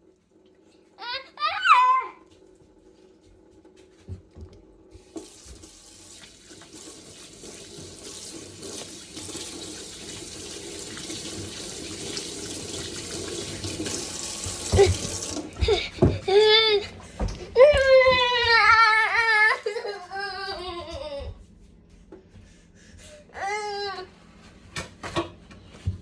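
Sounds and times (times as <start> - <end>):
tap water running into sink: 4.2 - 16.2.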